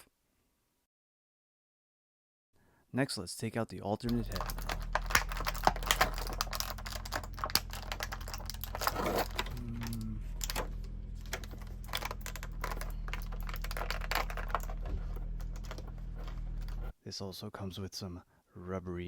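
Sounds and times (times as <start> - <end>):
plastic packaging clicks and crackles: 4.0 - 16.9
steady low hum: 4.1 - 16.9.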